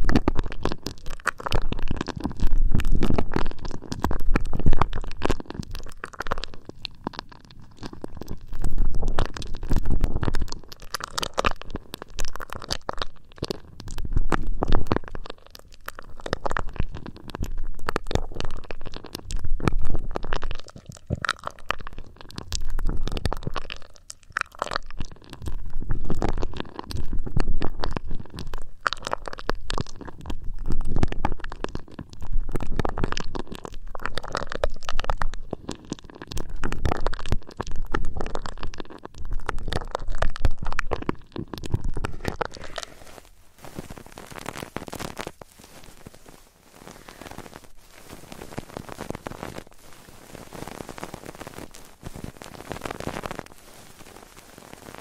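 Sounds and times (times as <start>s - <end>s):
fingers scratching microphone: 39.4s - 55.0s.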